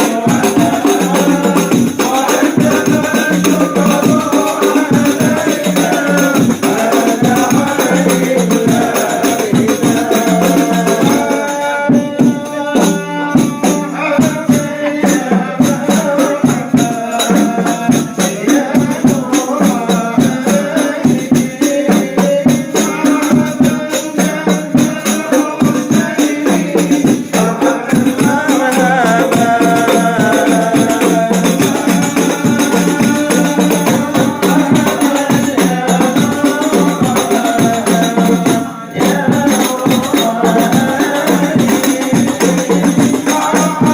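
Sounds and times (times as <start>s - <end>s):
group chanting devotional songs: 0.0s - 43.9s
hand-struck frame drums: 0.0s - 43.9s.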